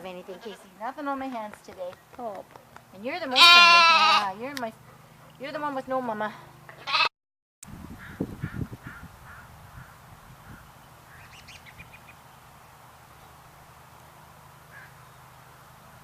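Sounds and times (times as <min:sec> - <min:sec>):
bird cawing: 0:08.0 - 0:12.0, 0:14.7 - 0:15.2.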